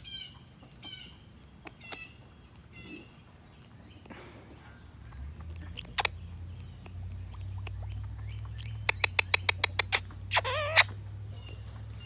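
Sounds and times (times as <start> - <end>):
low steady rumble: 3.5 - 12.0
parrot chirping: 5.8 - 12.0.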